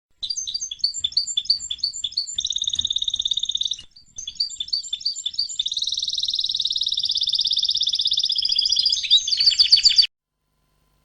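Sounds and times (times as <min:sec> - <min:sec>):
bird chirping and trilling: 0:00.2 - 0:10.1.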